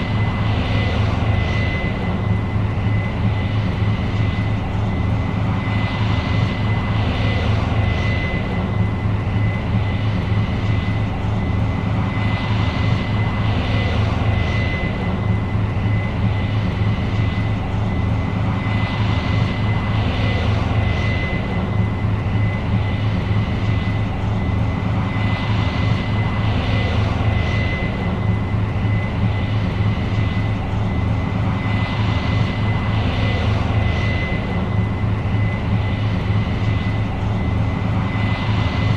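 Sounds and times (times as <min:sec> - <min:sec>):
combine harvester engine drone: 0:00.0 - 0:38.9.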